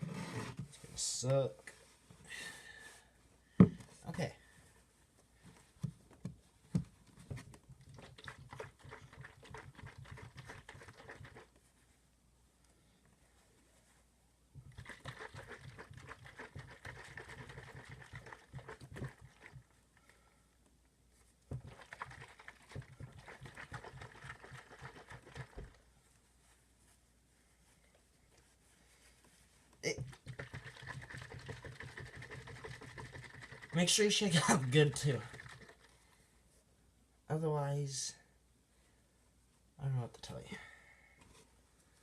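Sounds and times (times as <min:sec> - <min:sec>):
bottle of liquid shaken: 0:07.4 - 0:11.5, 0:14.6 - 0:19.7, 0:21.5 - 0:25.8, 0:30.0 - 0:36.0.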